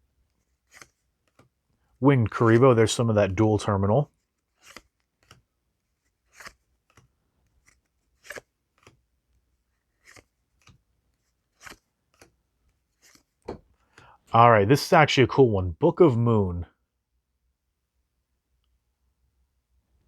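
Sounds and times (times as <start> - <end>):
cards swishing: 0.4 - 1.5, 4.3 - 5.4, 6.0 - 9.0, 9.9 - 12.3, 12.9 - 13.5.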